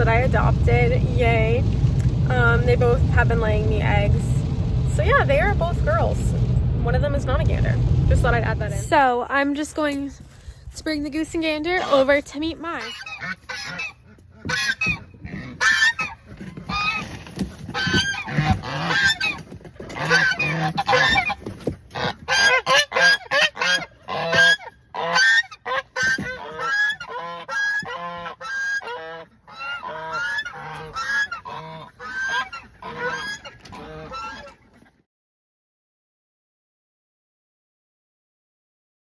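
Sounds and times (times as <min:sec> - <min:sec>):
geese honking: 0:11.7 - 0:17.0, 0:17.7 - 0:34.9.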